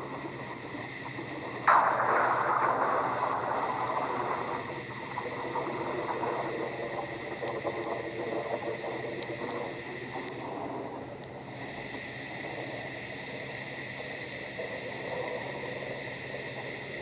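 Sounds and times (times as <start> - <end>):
rain hissing: 0.0 - 17.0
thunderclap rumbling: 1.7 - 6.6.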